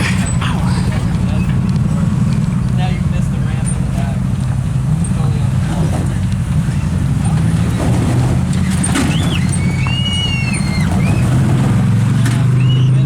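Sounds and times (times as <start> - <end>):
off-road vehicle engine under load: 0.0 - 13.0
high-pitched squeal: 5.7 - 13.0.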